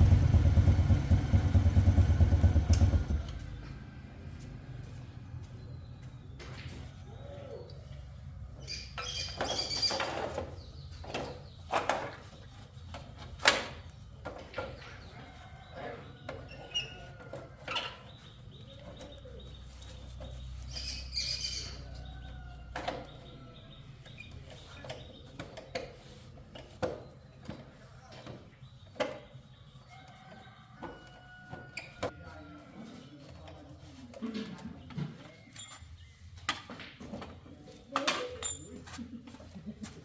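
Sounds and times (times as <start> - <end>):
motorcycle engine idling: 0.0 - 4.7.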